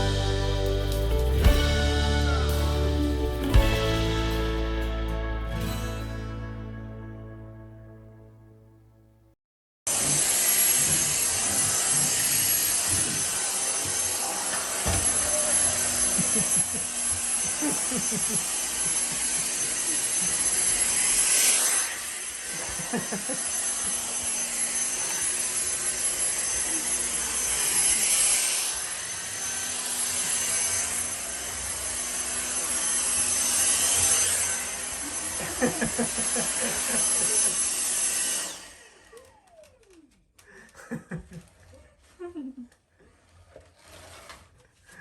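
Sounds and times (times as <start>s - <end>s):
vacuum cleaner whine: 9.9s - 40.5s
vacuum motor winding down: 9.9s - 40.7s.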